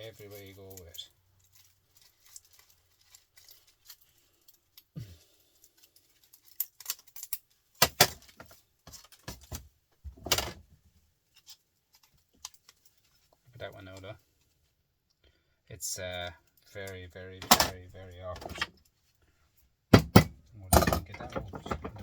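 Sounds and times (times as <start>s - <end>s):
metal scrap clinking and clattering: 17.4s - 18.7s, 20.1s - 22.0s.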